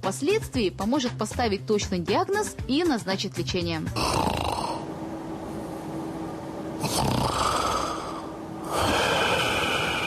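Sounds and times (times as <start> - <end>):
person snoring: 4.0 - 4.9, 6.8 - 10.0.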